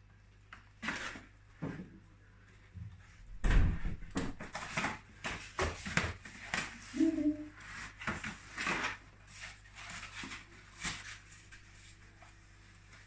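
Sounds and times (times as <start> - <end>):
heavy thud: 3.4 - 4.4.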